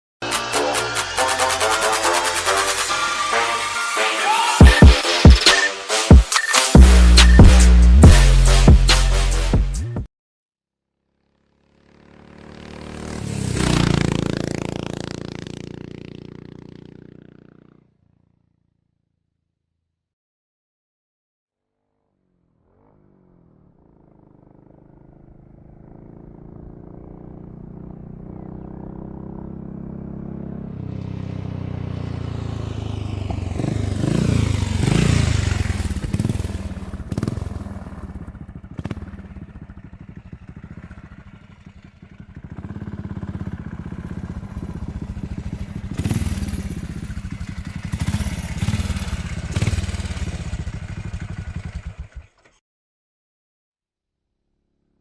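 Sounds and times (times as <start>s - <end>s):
motorcycle engine running: 11.0s - 19.2s, 22.2s - 52.6s.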